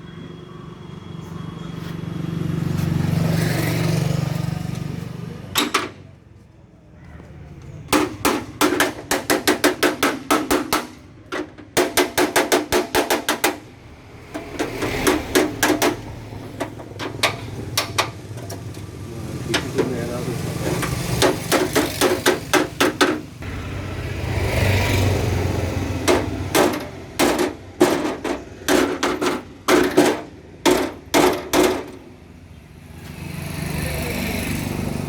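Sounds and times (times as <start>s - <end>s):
hammer striking sheet metal: 7.9s - 13.7s, 14.4s - 18.2s, 20.8s - 23.3s, 25.9s - 32.0s.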